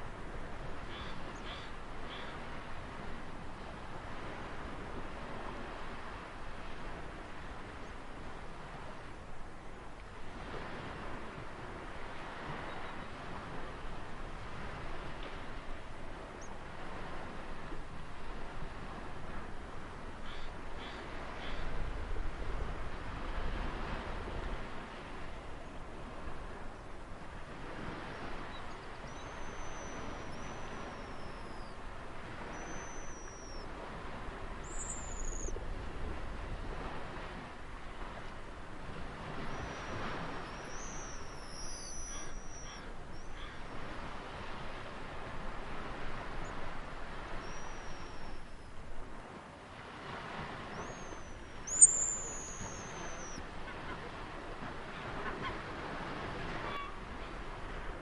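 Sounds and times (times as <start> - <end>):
ocean surf washing: 0.0 - 58.0
high bird calls: 29.1 - 31.8, 32.5 - 33.6, 34.6 - 35.5, 39.5 - 43.8, 47.4 - 48.5, 50.8 - 54.0.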